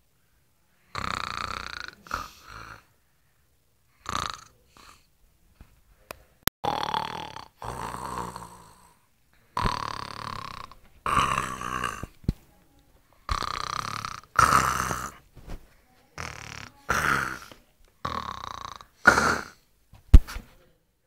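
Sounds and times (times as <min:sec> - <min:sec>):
baby snoring: 0:00.9 - 0:02.9, 0:04.0 - 0:05.1, 0:06.6 - 0:09.0, 0:09.6 - 0:12.2, 0:13.2 - 0:15.2, 0:16.2 - 0:19.6.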